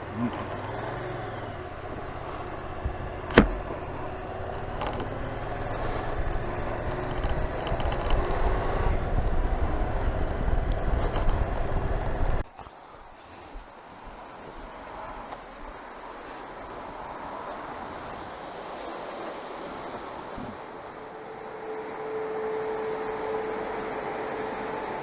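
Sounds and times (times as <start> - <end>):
motorcycle engine running: 0.0 - 12.4.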